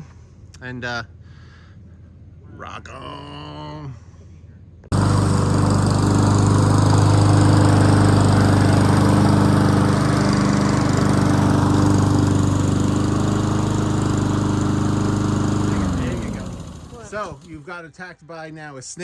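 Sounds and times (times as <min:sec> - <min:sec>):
lawn mower engine running: 0:04.9 - 0:17.7.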